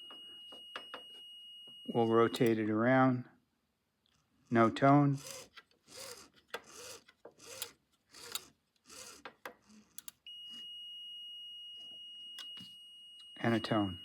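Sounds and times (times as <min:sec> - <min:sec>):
steady high test tone: 0:01.8 - 0:03.2
sharp mechanical clicks: 0:02.3 - 0:02.6, 0:04.8 - 0:10.2
mechanism noisy strokes: 0:05.1 - 0:10.1.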